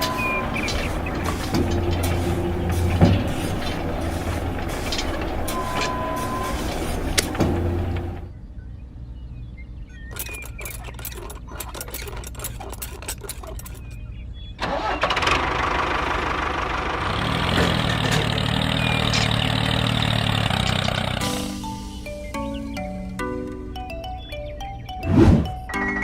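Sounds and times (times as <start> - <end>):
starter clicks and rattles: 0.0 - 8.3, 10.1 - 14.0, 14.6 - 22.9
tractor engine running: 0.0 - 8.3, 10.2 - 14.0, 14.6 - 24.8
music: 21.2 - 26.0.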